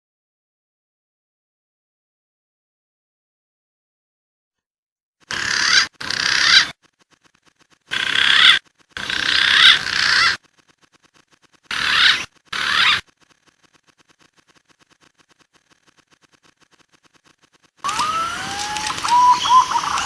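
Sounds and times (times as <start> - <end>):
pigeon warbling whistles: 17.9 - 20.0.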